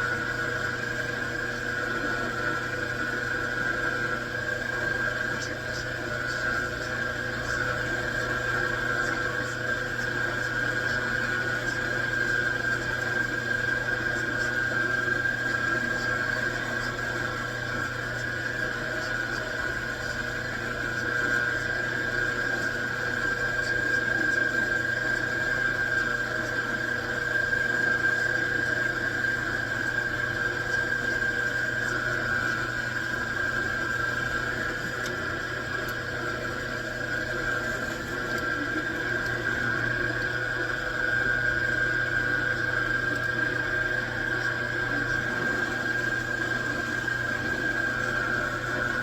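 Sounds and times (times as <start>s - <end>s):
metal lathe whine: 0.0s - 49.0s.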